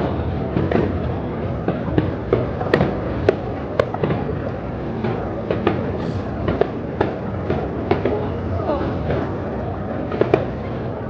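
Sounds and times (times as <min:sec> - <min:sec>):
steady background rumble: 0:00.0 - 0:11.0
fireworks bangs: 0:00.4 - 0:11.0.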